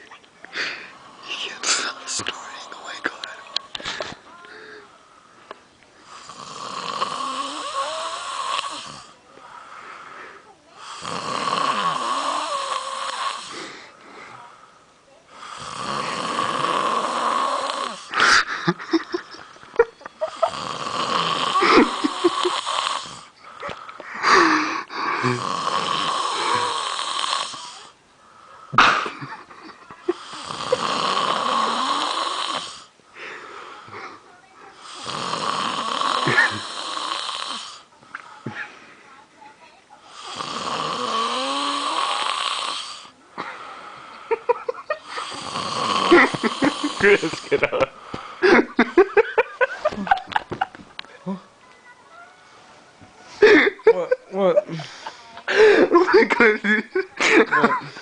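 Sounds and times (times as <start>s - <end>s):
man snoring loudly: 6.1s - 9.2s, 10.8s - 13.6s, 15.4s - 18.1s, 20.4s - 23.3s, 25.2s - 27.9s, 30.2s - 32.9s, 34.8s - 37.9s, 40.2s - 43.1s, 45.0s - 47.6s.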